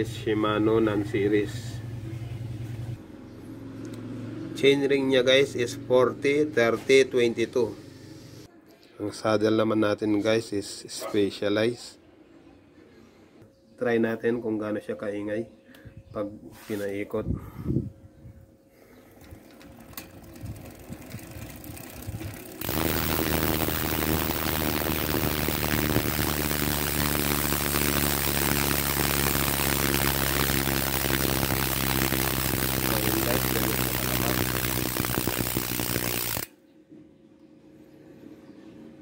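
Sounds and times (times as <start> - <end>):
bike hub ratcheting buzz: 19.4 - 36.5.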